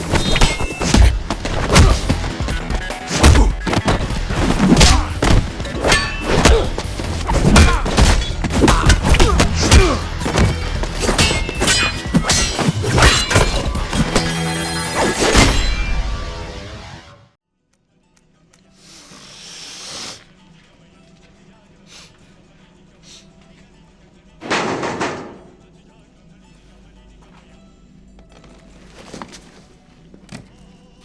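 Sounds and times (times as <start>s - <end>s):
punch and kick impacts: 0.0s - 14.4s
background music: 0.0s - 18.9s, 20.3s - 31.0s.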